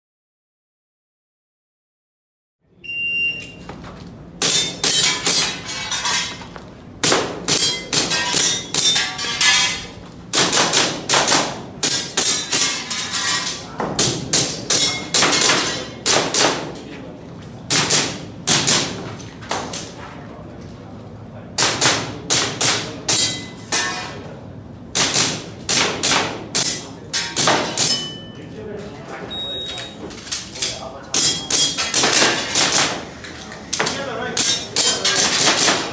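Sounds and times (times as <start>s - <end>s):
shot timer beep: 2.8s - 3.6s, 29.3s - 30.0s
airsoft pistol rapid shots: 10.3s - 12.6s, 17.7s - 19.0s, 25.0s - 26.8s, 31.6s - 33.0s, 34.8s - 35.9s.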